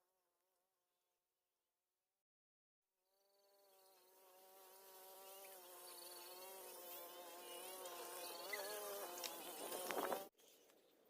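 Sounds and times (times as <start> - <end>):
insect buzzing: 3.2 - 10.3.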